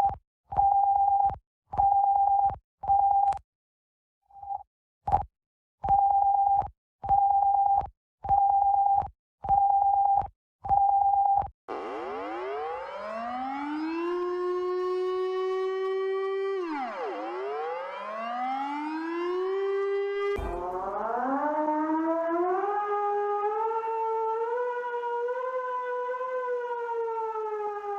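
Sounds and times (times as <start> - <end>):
civil defense siren wailing: 11.7 - 27.9.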